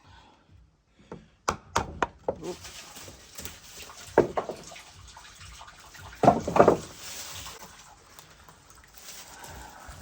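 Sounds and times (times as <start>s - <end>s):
mallet striking wood block: 1.4s - 2.4s
oil dribbling: 3.3s - 9.0s.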